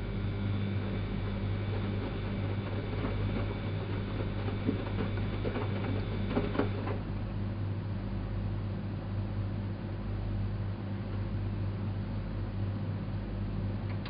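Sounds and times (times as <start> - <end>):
washing machine humming: 0.0 - 14.0.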